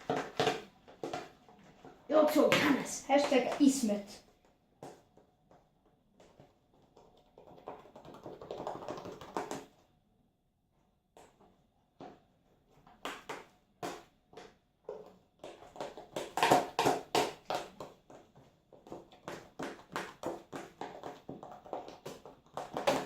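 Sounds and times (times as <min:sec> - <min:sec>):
slime squelching and popping: 0:12.8 - 0:23.0.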